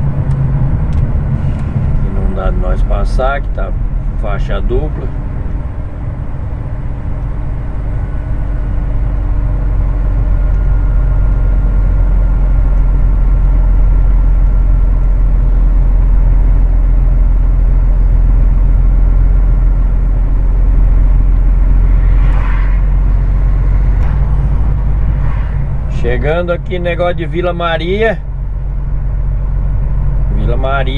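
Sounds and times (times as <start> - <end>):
diesel truck engine droning: 0.0 - 30.9
short higher sound: 21.5 - 27.3.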